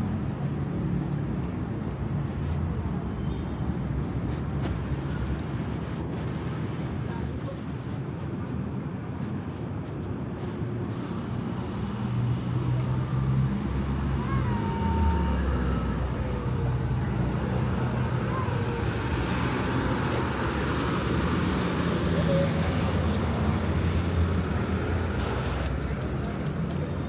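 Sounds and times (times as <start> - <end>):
vehicle engines rumbling past: 10.4 - 27.0.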